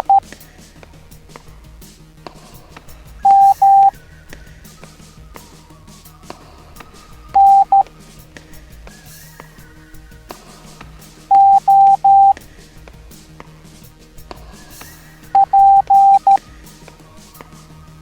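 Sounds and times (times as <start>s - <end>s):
morse code beeps: 0.0s - 0.2s, 3.3s - 3.9s, 7.4s - 7.8s, 11.3s - 12.4s, 15.4s - 16.4s
quiet background music: 0.0s - 18.0s.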